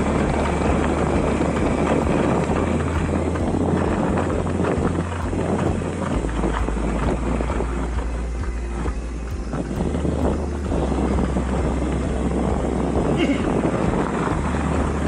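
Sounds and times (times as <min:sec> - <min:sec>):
mountain bike rattling on rough trail: 0:00.0 - 0:15.0
wind buffeting microphone: 0:00.0 - 0:15.0.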